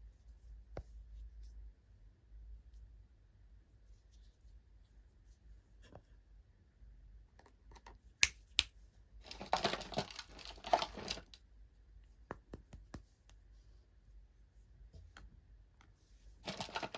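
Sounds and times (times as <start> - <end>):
packaging crinkling and tearing: 16.5 - 16.9.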